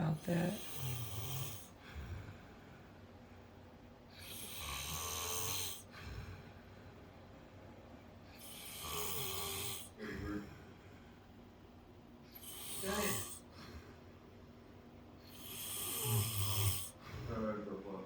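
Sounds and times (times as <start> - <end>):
man snoring: 0.6 - 1.8, 4.2 - 5.9, 8.4 - 10.6, 12.4 - 13.5, 15.3 - 17.0.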